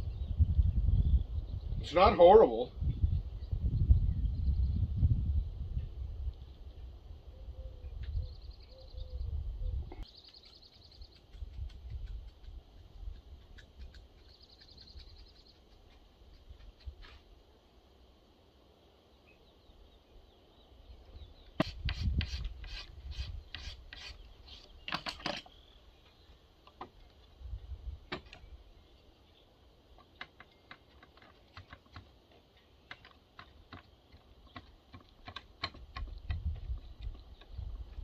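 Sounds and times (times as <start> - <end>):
rasp scraping wooden handle: 21.6 - 25.4.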